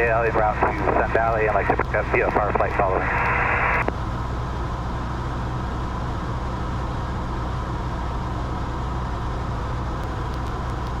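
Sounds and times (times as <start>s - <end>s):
aircraft engine and propeller drone: 0.0s - 11.0s.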